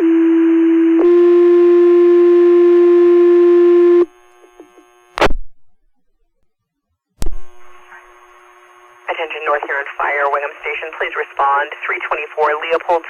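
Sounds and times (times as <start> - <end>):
buzzy radio paging tone: 1.0 - 5.7, 7.2 - 13.0
faint radio channel hiss: 7.2 - 13.0.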